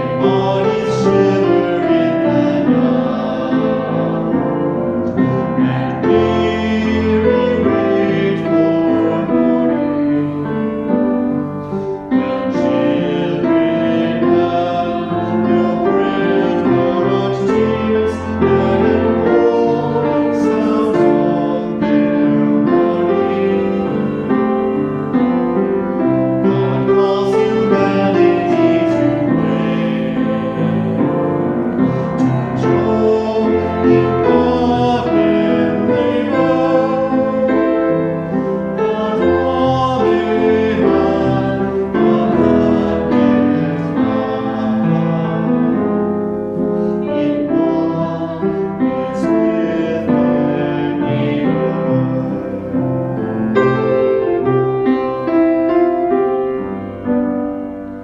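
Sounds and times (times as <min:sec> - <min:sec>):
piano music: 0:00.0 - 0:58.0.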